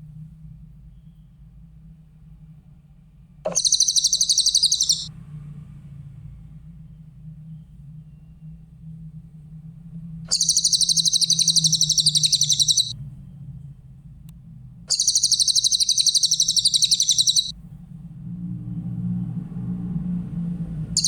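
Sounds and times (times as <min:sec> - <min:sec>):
songbird high trilling: 0:03.5 - 0:05.1, 0:10.3 - 0:12.9, 0:14.9 - 0:17.5
steady low hum: 0:03.5 - 0:05.1, 0:09.7 - 0:13.2, 0:14.0 - 0:18.1.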